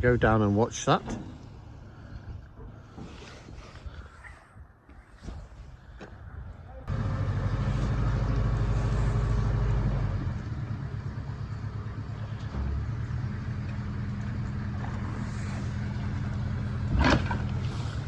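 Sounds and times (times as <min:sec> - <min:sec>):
diesel engine throbbing: 0:06.8 - 0:18.0.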